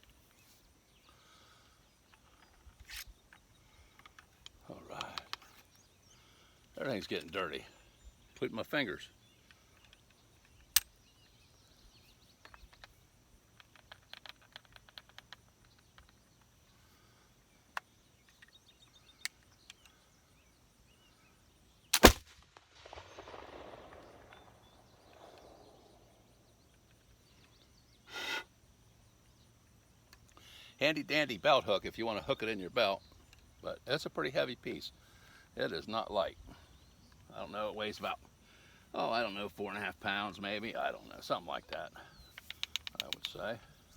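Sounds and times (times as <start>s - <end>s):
pistol handling clicks and taps: 9.5s - 11.0s, 42.3s - 43.4s
pistol shot: 21.9s - 26.1s.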